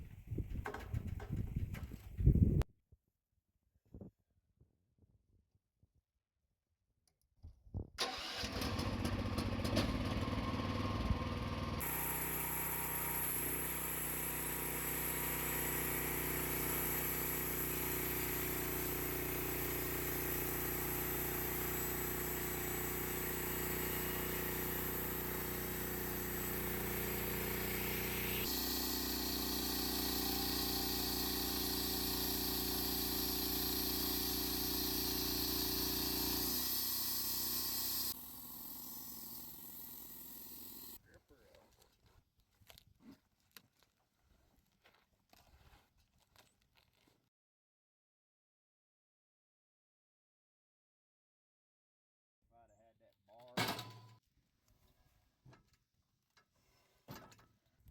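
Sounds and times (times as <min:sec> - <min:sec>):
small gasoline engine running: 0:08.0 - 0:41.0.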